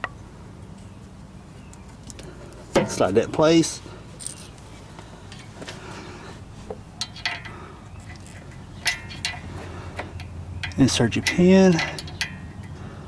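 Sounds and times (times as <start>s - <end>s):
light metallic clicks: 7.0s - 12.8s.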